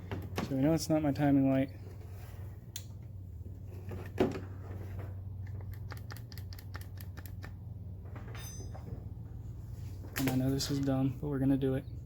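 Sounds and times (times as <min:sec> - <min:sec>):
rapid sharp clicks: 0:05.6 - 0:07.6.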